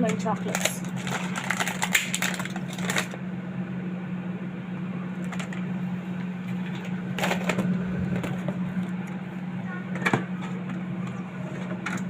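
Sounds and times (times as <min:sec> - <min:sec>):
electrical appliance hum: 0:00.0 - 0:12.0
packets and boxes rustling: 0:00.1 - 0:03.2.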